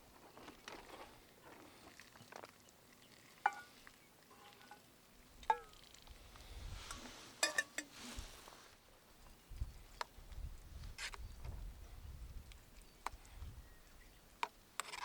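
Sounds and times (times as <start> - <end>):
utensil clinking against bowl: 7.4 - 7.9.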